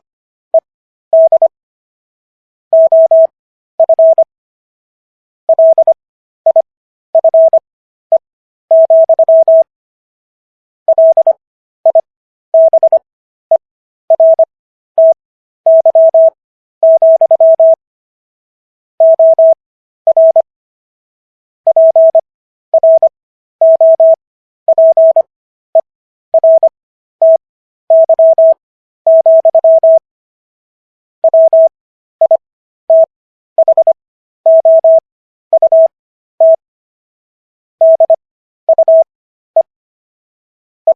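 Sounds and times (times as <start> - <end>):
morse code tone: 2.8 - 4.3, 5.5 - 6.6, 7.2 - 7.6, 8.7 - 9.7, 10.9 - 13.0, 14.1 - 17.8, 19.0 - 20.5, 21.7 - 22.2, 22.8 - 25.3, 26.4 - 30.0, 31.2 - 36.6, 37.8 - 39.7.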